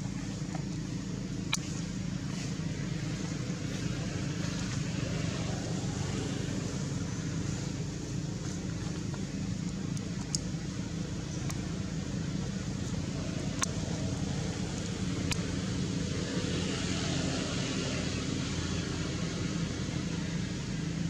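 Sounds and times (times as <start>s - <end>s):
low motor hum: 0.0s - 21.0s
faint clicks: 8.4s - 10.5s, 11.2s - 11.7s, 12.8s - 13.8s.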